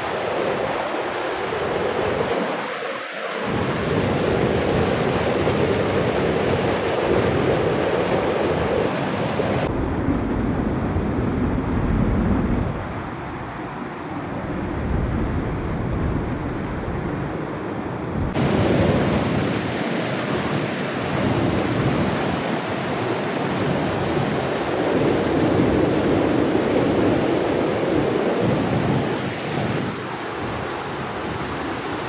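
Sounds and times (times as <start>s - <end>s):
river water rushing: 0.0s - 9.7s, 18.4s - 32.0s.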